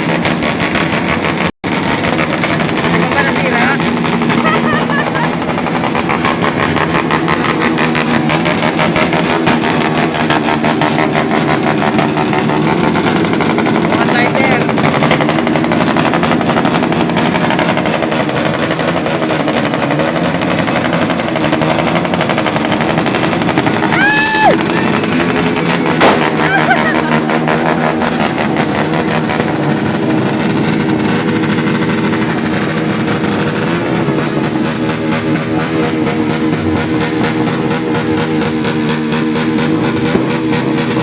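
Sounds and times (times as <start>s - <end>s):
exhaust crackle of pops: 0.0s - 41.0s
motorcycle exhausts revving: 0.0s - 41.0s
sharp bang: 25.9s - 26.5s.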